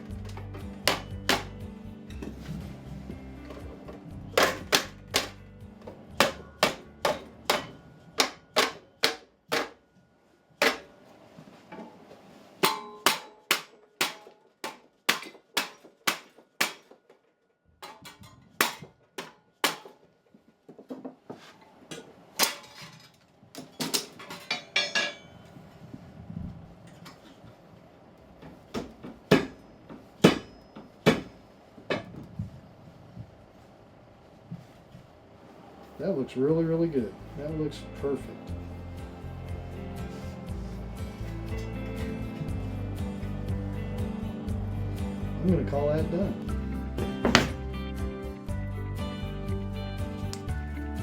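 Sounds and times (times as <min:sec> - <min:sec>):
hammer striking sheet metal: 0:00.8 - 0:01.6, 0:04.3 - 0:05.5, 0:06.1 - 0:09.8, 0:10.6 - 0:11.0, 0:12.6 - 0:17.0, 0:17.8 - 0:20.0, 0:30.2 - 0:31.3.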